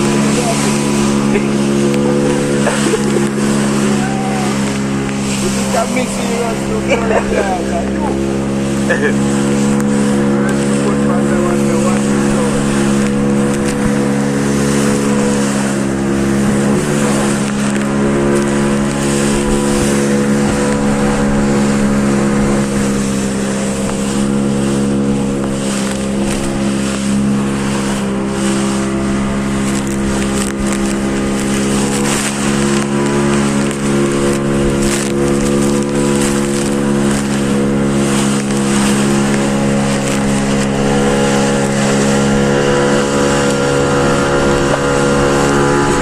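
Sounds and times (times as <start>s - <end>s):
engine running steadily: 0.0s - 46.0s
wind buffeting microphone: 0.0s - 46.0s.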